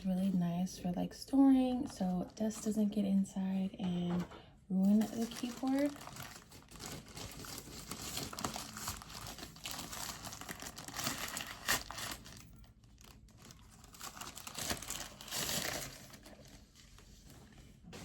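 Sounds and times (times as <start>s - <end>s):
plastic cover crinkling and rustling: 4.9s - 18.0s.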